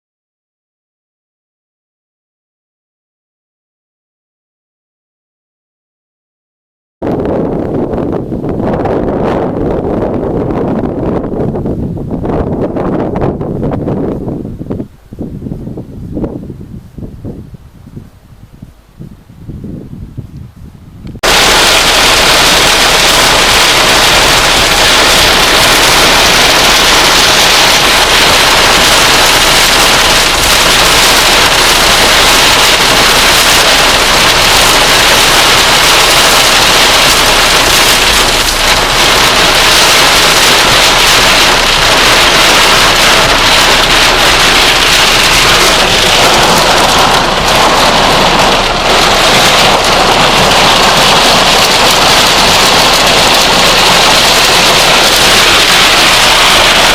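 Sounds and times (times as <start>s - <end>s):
heavy rain pouring: 21.2s - 56.9s.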